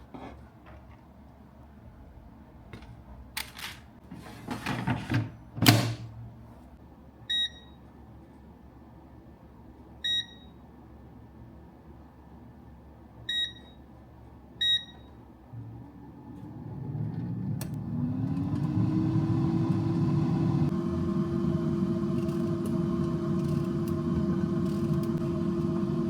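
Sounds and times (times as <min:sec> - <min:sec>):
electric motor spinning up: 0:15.6 - 0:26.0.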